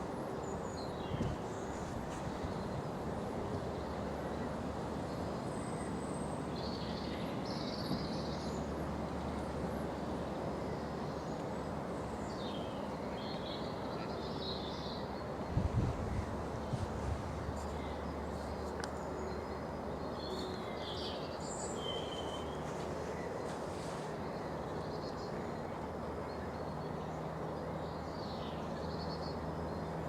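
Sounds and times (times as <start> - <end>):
birds twittering: 10.6 - 30.0.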